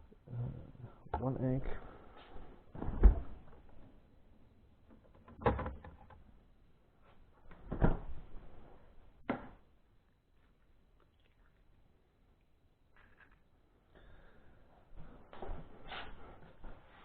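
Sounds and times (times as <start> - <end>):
kitchen knocks and clunks: 2.7 - 3.6.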